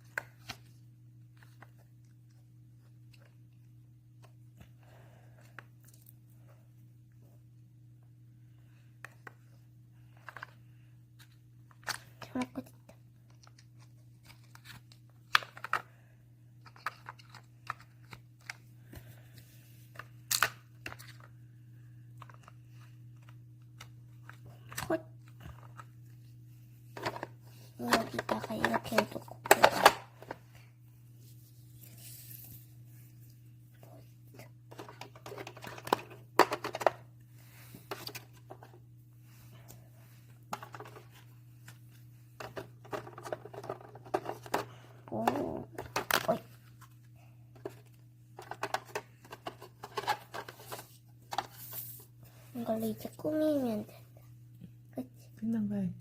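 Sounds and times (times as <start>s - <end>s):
low steady hum: 0.0s - 56.0s
plastic stationery clicking and clattering: 16.6s - 18.6s, 42.4s - 44.7s, 48.4s - 51.4s.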